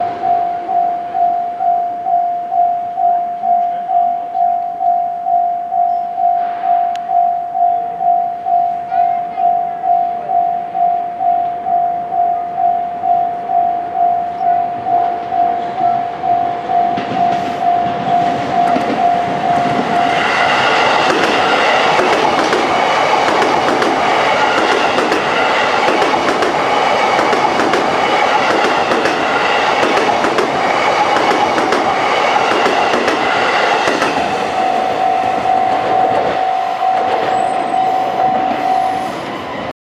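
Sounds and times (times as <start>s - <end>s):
train wheels clacking on rail joints: 16.6s - 38.9s.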